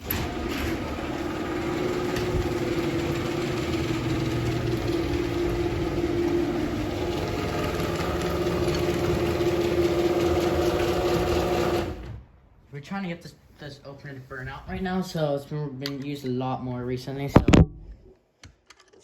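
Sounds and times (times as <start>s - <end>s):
garage door opener motor humming: 0.0s - 12.2s.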